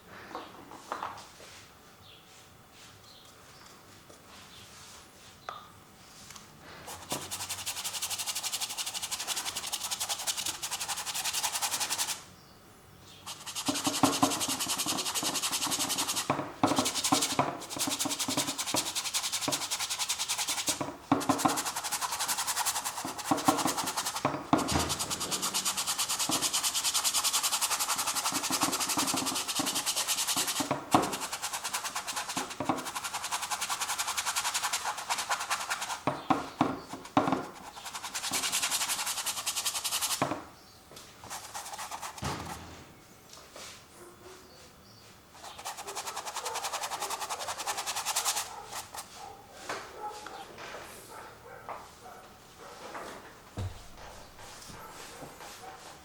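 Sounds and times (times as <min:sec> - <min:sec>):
paintbrush scrubbing on canvas: 0:06.9 - 0:12.2, 0:13.2 - 0:40.4, 0:41.2 - 0:42.6, 0:45.4 - 0:49.4.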